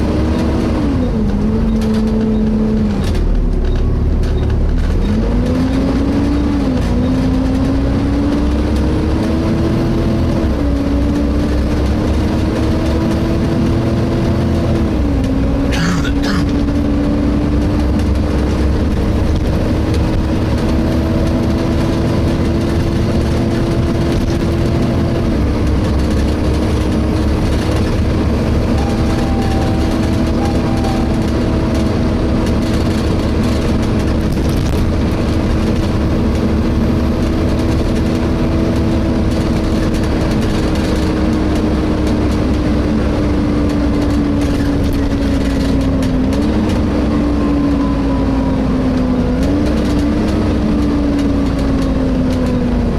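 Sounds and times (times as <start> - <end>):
bus engine rumbling: 0.0 - 52.9.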